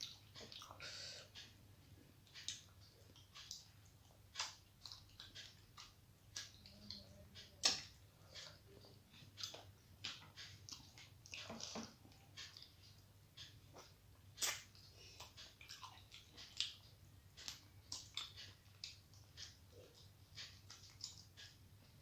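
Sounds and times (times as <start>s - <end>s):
wet chewing mouth smacks: 13.7s - 21.5s.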